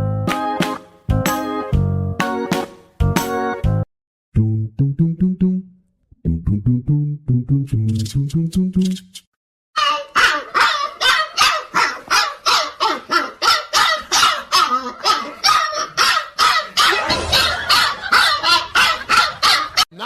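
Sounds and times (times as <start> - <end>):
dog barking: 9.9 - 19.8.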